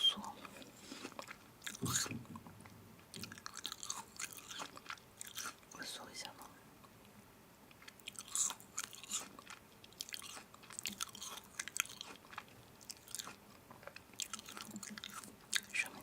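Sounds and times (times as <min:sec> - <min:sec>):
person chewing crunchy food: 0:00.2 - 0:05.7, 0:07.7 - 0:16.0.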